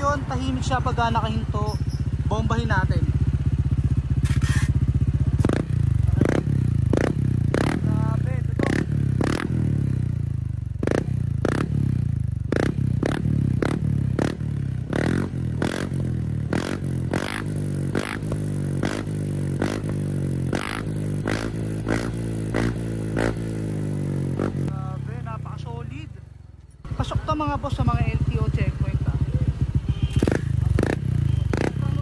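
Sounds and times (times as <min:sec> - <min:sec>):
scooter engine throttle blips: 0:01.0 - 0:14.3, 0:26.9 - 0:32.0.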